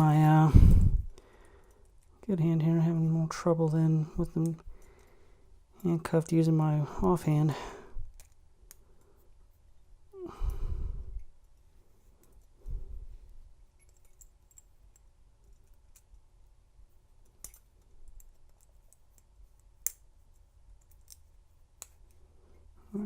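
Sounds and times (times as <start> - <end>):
person sighing: 10.1 - 11.1
pick tool clicking in handcuff lock: 17.3 - 20.1.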